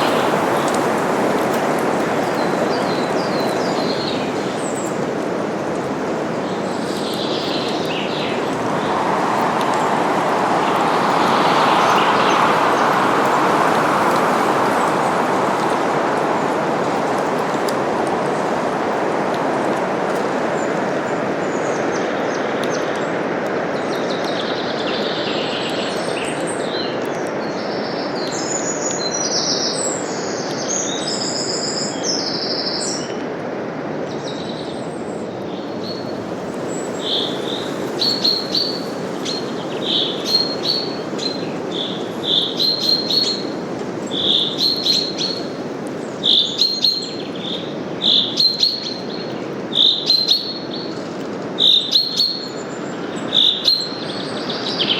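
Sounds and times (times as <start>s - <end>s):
songbirds chirping: 0.0s - 18.8s, 33.9s - 54.9s
wind rustling through leaves: 0.0s - 54.9s.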